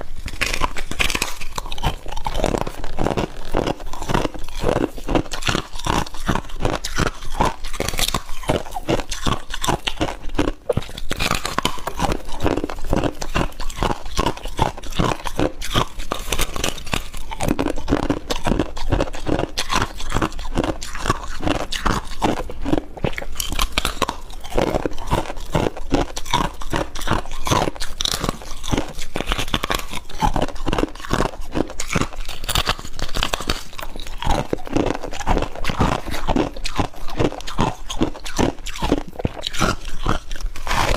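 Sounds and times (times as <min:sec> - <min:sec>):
chewing crunchy frost: 0:00.0 - 0:40.9.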